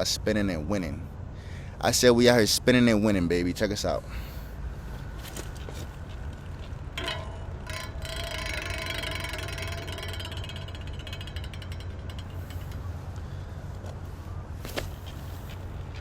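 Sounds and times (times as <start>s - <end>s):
freewheel ratcheting clicks: 6.2s - 13.3s.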